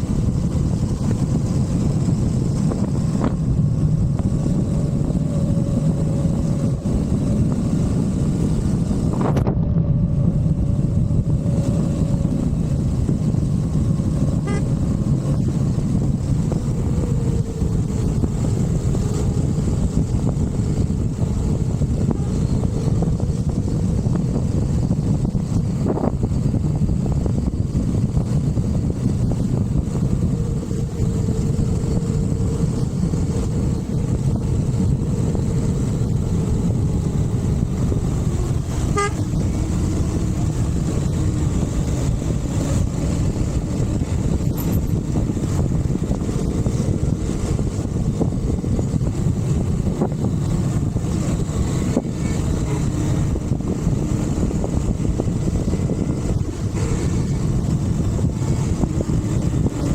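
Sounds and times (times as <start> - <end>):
motorcycle engine running: 0.0 - 59.9
wind rush on microphone: 0.0 - 59.9
horn toot: 14.4 - 14.7, 38.7 - 39.4.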